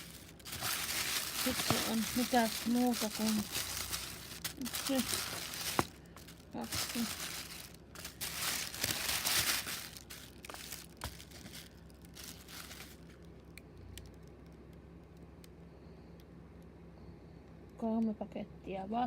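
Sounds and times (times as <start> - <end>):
packaging crinkling and rustling: 0.0 - 13.3.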